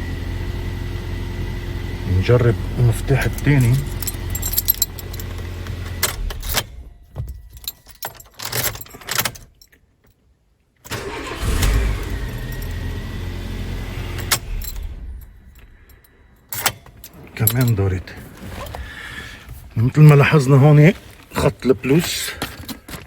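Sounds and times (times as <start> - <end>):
car engine running: 0.0 - 7.0, 10.9 - 16.0
engine cranking: 2.0 - 9.4, 10.9 - 23.0
key clicks: 3.2 - 6.6.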